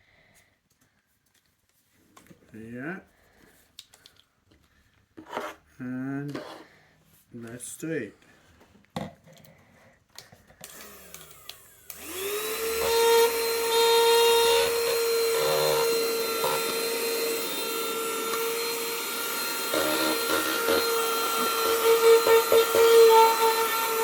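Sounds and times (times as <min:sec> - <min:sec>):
vacuum cleaner motor whine: 0:10.6 - 0:24.0.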